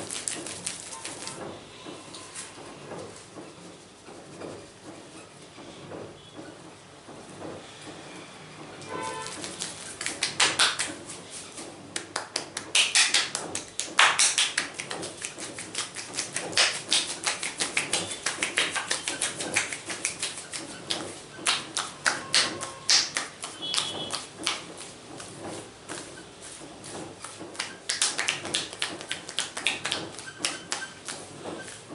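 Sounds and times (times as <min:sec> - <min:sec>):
hands tapping on head: 0:09.2 - 0:31.9.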